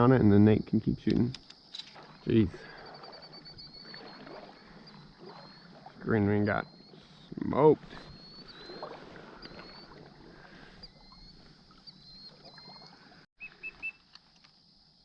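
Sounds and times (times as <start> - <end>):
faint high chirp: 1.7 - 10.1, 10.7 - 14.1.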